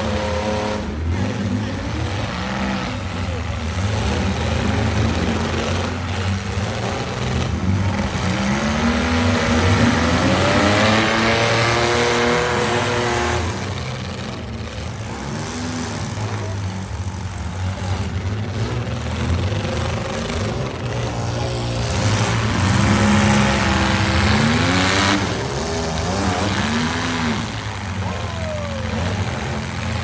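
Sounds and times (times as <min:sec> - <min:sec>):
car engines running hard: 0:00.0 - 0:30.0
engine revving: 0:00.0 - 0:30.0.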